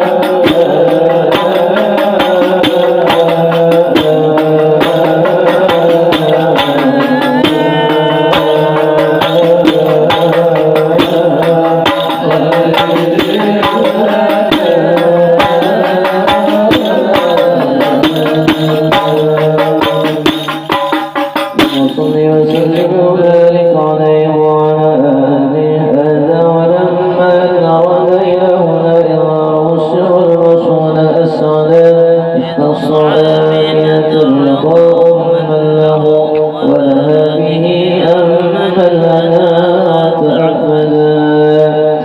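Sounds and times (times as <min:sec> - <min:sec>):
group singing devotional verses: 0:00.0 - 0:20.6, 0:21.7 - 0:42.0
hand frame drums: 0:00.0 - 0:23.7.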